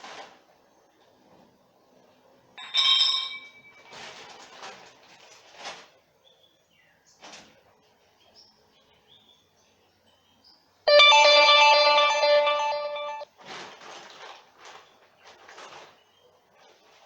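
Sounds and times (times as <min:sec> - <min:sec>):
scraping and rustling handling: 0:03.8 - 0:06.0, 0:13.4 - 0:17.0.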